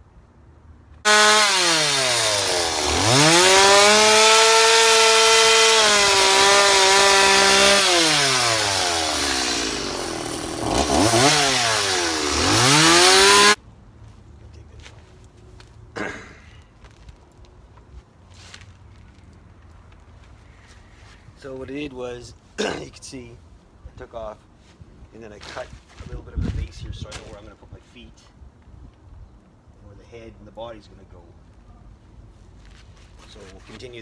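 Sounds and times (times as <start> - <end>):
chainsaw cutting wood: 1.1 - 13.6
man talking: 21.4 - 23.4, 33.3 - 34.0.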